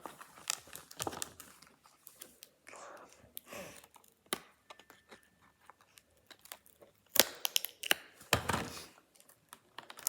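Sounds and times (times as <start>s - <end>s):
packaging crackling and tearing: 0.2s - 2.5s.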